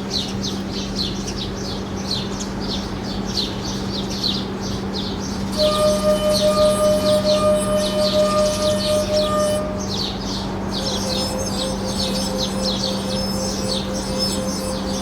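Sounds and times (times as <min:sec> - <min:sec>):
bird chirping: 0:05.0 - 0:15.0
singing glass tone: 0:05.5 - 0:15.0.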